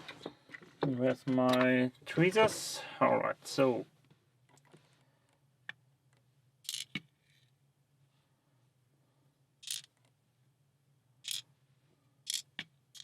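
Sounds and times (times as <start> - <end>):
metallic clicks from lock parts: 9.6 - 9.9, 11.2 - 11.4.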